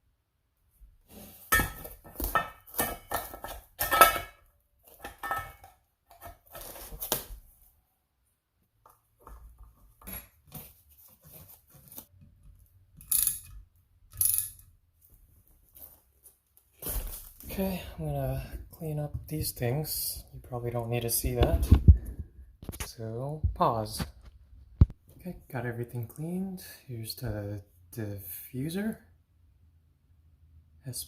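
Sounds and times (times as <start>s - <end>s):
metal tools clinking: 1.5s - 4.4s, 5.0s - 6.4s.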